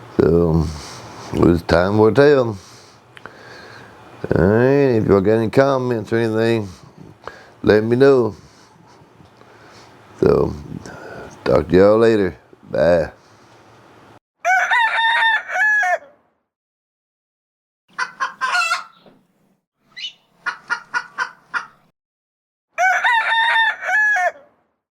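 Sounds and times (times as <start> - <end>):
rooster crowing: 14.4 - 16.2, 18.0 - 19.0, 22.8 - 24.6
chicken clucks: 17.9 - 19.0, 20.4 - 21.8.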